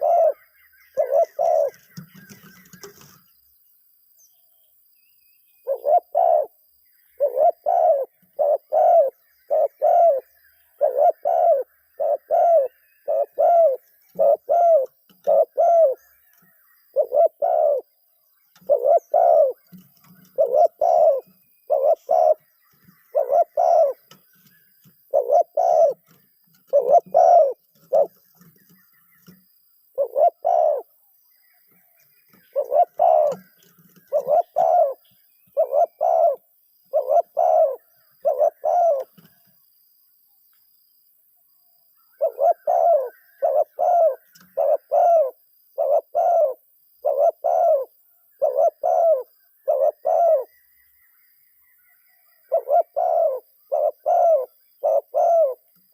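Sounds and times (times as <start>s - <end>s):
dove cooing: 0.0s - 3.2s, 5.7s - 6.6s, 7.2s - 16.1s, 16.9s - 17.9s, 18.6s - 22.4s, 23.1s - 24.2s, 25.1s - 31.0s, 32.3s - 39.3s, 42.2s - 50.5s, 52.5s - 55.7s.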